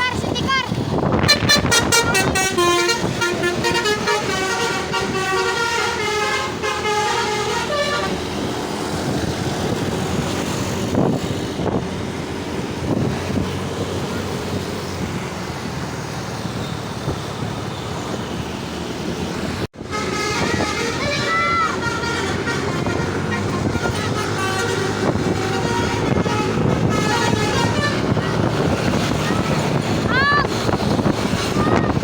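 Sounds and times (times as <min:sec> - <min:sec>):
moving bus road noise: 0:00.0 - 0:32.0
multi-tone air horn melody: 0:01.2 - 0:08.4, 0:19.8 - 0:28.7.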